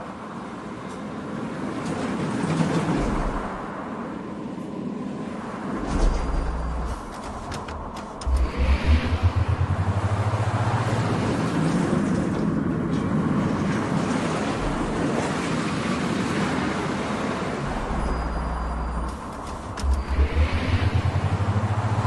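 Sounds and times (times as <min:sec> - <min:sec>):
steady rushing noise: 0:02.3 - 0:22.0
vehicle engine pulling away: 0:05.9 - 0:12.5, 0:14.4 - 0:15.4, 0:17.6 - 0:22.0.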